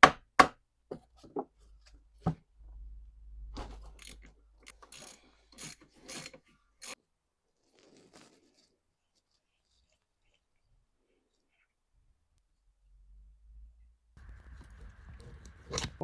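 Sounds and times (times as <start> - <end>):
parts scraping and rubbing: 3.6 - 7.0, 14.2 - 16.0.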